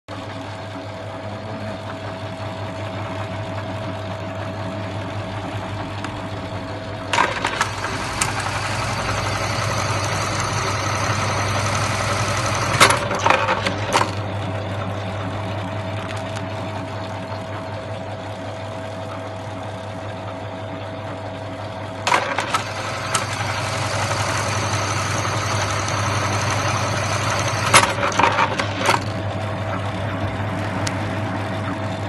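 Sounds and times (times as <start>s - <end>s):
sewing machine motor humming: 1.7s - 14.5s, 22.0s - 31.8s
sewing machine stitching clatter: 7.1s - 14.2s, 22.1s - 29.2s.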